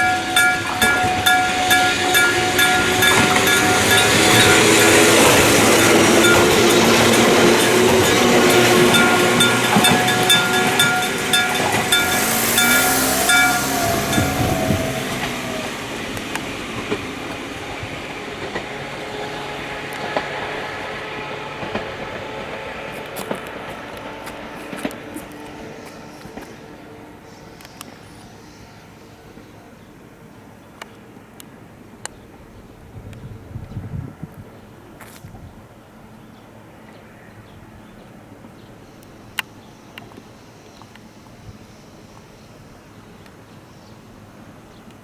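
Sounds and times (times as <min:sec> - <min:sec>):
level crossing bell clanging: 0:00.0 - 0:18.8
train wheels on rails: 0:00.0 - 0:37.1, 0:37.8 - 0:45.0.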